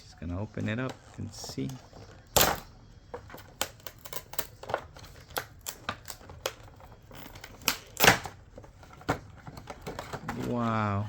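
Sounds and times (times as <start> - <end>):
toy packaging crackling: 0.5 - 11.0.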